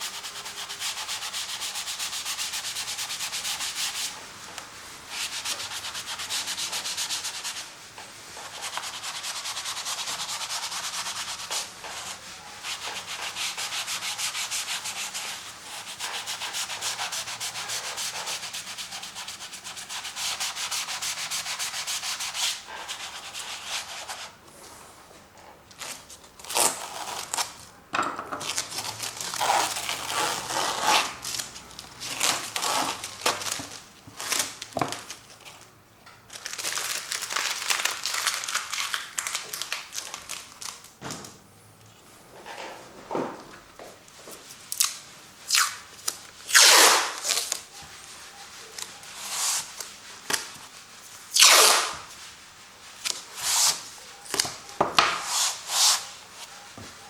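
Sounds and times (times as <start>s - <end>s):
paint tool scrubbing on canvas: 4.8s - 24.4s, 46.6s - 54.2s, 55.2s - 57.0s.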